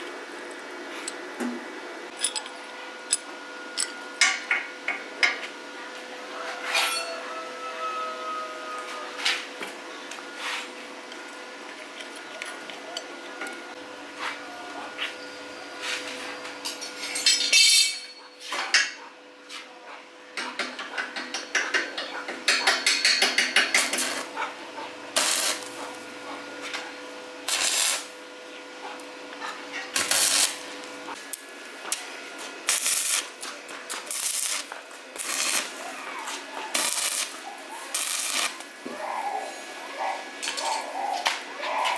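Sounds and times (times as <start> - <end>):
metal tools clinking and knocking: 2.1 - 4.4, 16.6 - 18.2.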